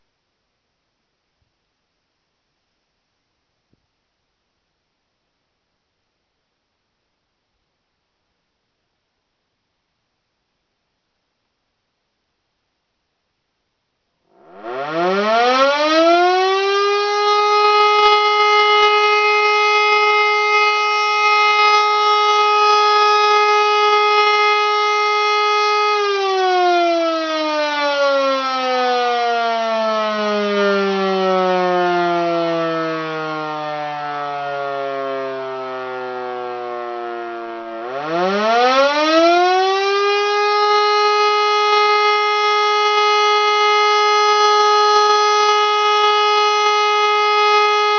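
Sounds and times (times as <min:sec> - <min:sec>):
motor siren wailing: 0:14.4 - 0:47.9.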